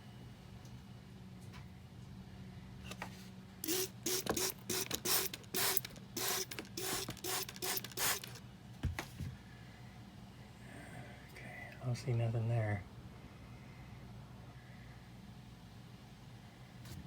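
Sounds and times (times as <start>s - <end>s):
faint steady hum: 0.0s - 17.0s
spray bottle squirting: 3.6s - 8.4s.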